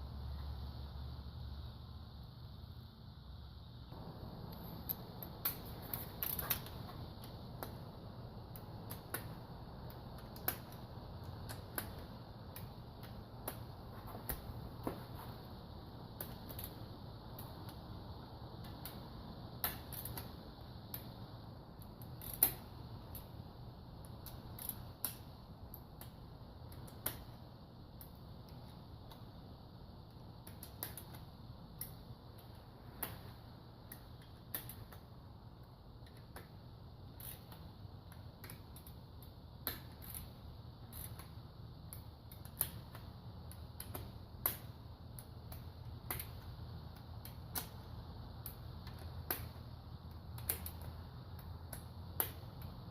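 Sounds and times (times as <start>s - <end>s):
low steady hum: 0.0s - 52.9s.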